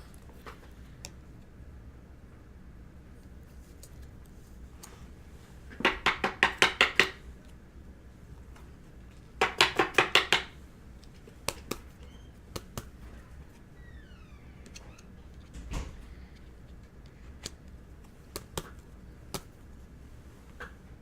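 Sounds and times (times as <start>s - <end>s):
cards clicking as flipped: 11.0s - 11.9s, 12.5s - 13.0s, 16.7s - 19.6s.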